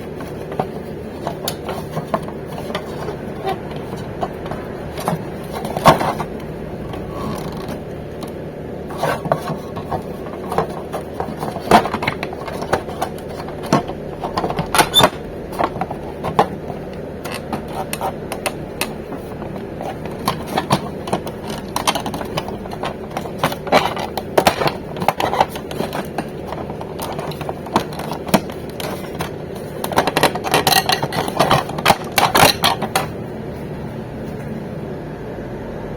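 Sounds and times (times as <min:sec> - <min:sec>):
steady hum: 0:00.0 - 0:35.9.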